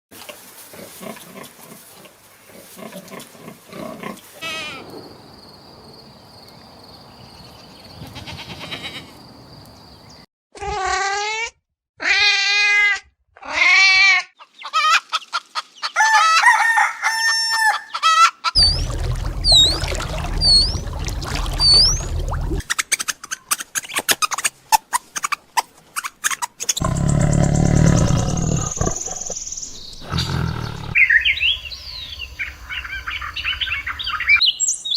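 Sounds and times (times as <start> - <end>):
rooster crowing: 16.0 - 18.2
animal calls: 26.7 - 29.4.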